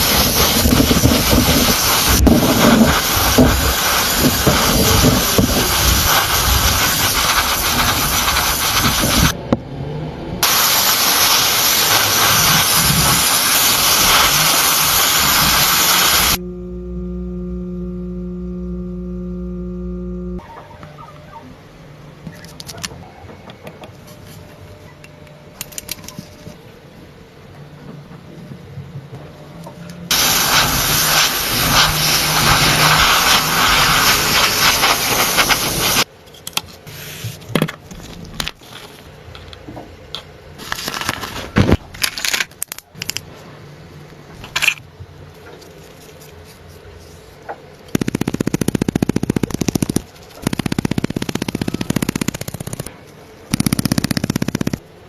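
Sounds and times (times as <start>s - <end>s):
water spraying hiss: 0.0s - 9.4s, 10.4s - 16.4s, 30.1s - 36.1s.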